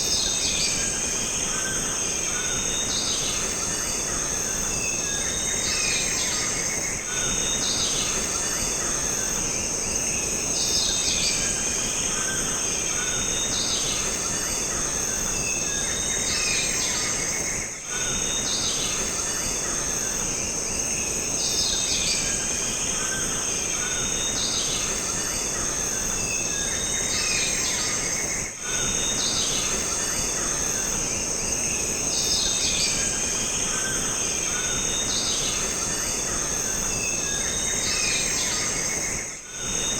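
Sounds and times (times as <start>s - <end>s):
high insect drone: 0.0s - 39.9s.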